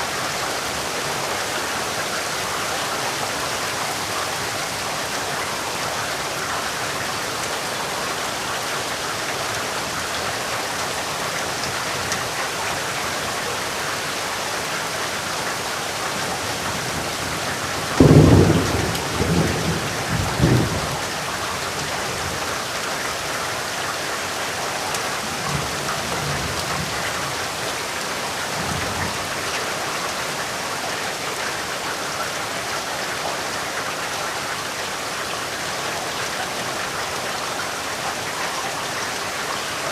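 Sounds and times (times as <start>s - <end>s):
heavy rain: 0.0s - 39.9s
distant thunder rumbles: 17.8s - 21.1s
thunder crack and rumbles: 17.8s - 21.2s.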